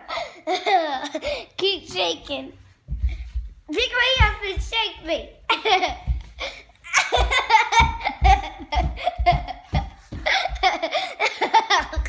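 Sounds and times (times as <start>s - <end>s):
young child laughing: 0.0s - 1.6s, 5.5s - 12.0s
low thumps: 2.6s - 10.9s.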